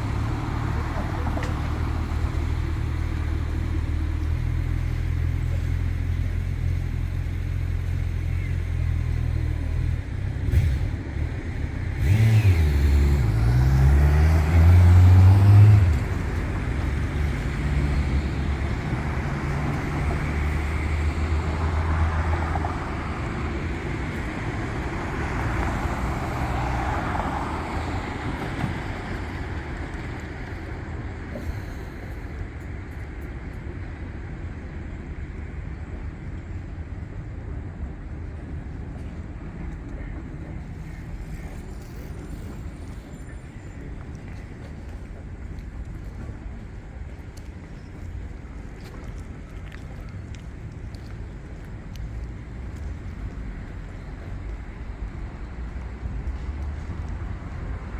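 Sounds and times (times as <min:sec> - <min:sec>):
vehicle engine pulling away: 0:00.0 - 0:32.2
road traffic noise: 0:00.0 - 0:57.9.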